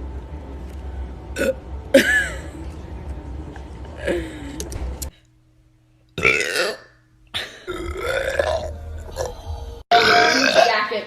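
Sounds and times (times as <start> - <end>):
steady background hum: 0.0 - 11.0
girl burping loudly: 6.2 - 11.0.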